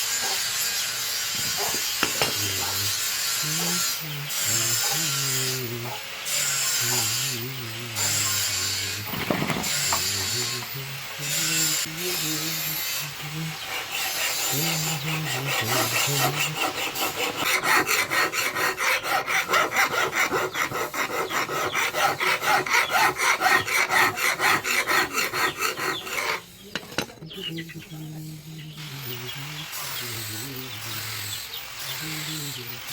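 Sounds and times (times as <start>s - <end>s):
file rasping on steel blade: 0.0s - 27.1s, 29.6s - 32.9s
low voice: 2.2s - 6.0s, 6.7s - 13.7s, 14.5s - 16.8s, 26.6s - 31.2s, 31.9s - 32.9s.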